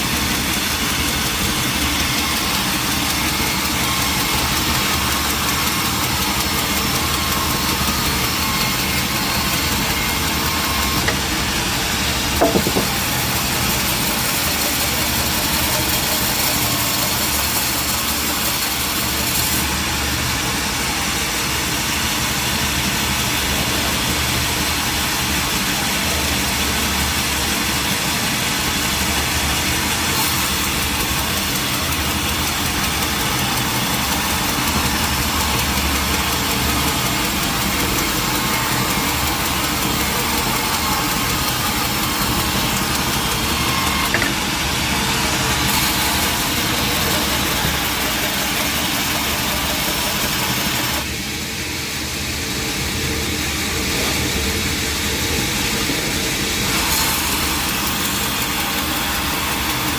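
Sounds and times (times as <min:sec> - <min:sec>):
sawmill machinery humming: 0:00.0 - 0:59.9
brief knock: 0:12.4 - 0:13.0, 0:44.1 - 0:44.4.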